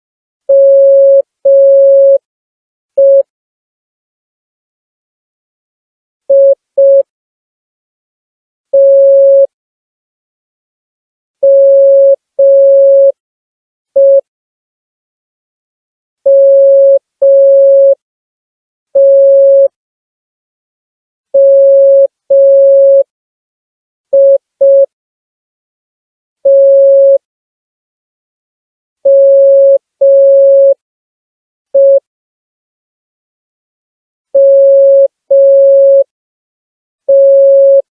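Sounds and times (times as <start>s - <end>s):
morse code beeps: 3.0s - 3.2s, 8.8s - 9.5s, 11.4s - 13.1s, 14.0s - 14.2s, 16.3s - 18.0s, 21.4s - 23.0s, 29.1s - 30.8s, 31.8s - 32.0s, 34.4s - 36.0s, 37.1s - 37.8s.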